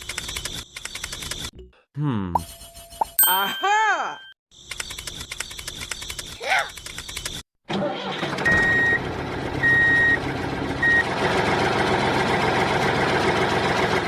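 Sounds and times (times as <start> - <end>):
engine running: 8.1 - 14.0.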